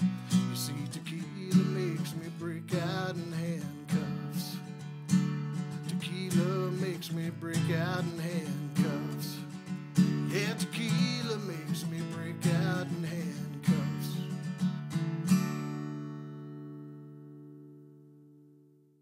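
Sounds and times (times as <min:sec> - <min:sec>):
acoustic guitar strumming: 0:00.0 - 0:18.8.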